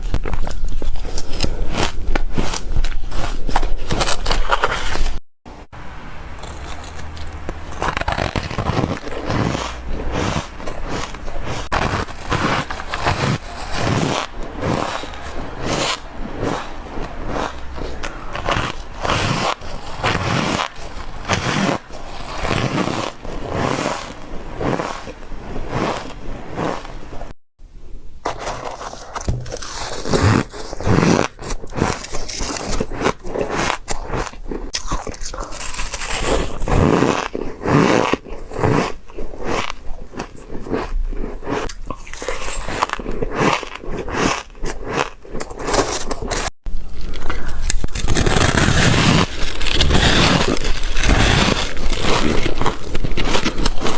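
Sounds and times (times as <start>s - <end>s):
crunching bites into ice: 6.4s - 26.2s, 47.3s - 53.9s.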